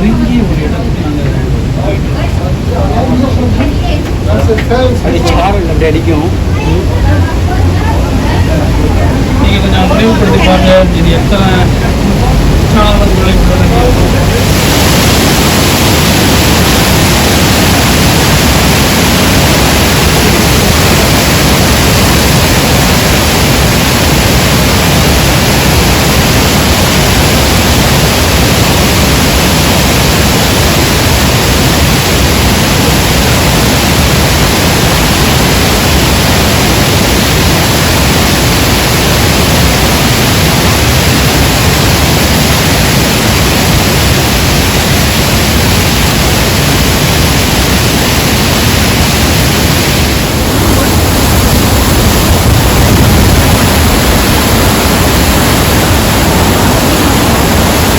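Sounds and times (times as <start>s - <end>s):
waterfall rushing: 0.0s - 57.9s.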